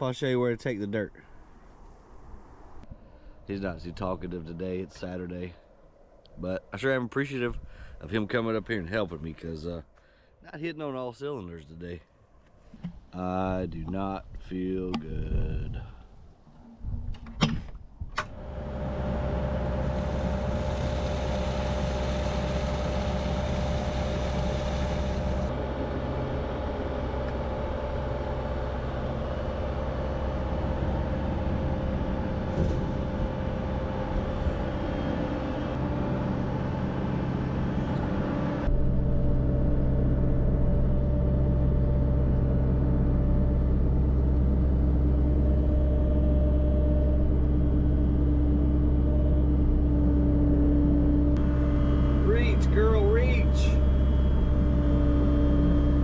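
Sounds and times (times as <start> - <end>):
excavator diesel engine running: 18.4 - 56.0.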